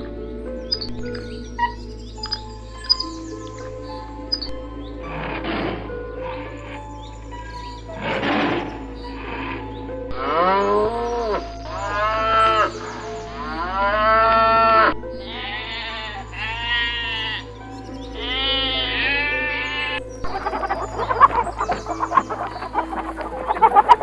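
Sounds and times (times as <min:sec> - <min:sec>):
livestock bleating: 0:13.5 - 0:24.0.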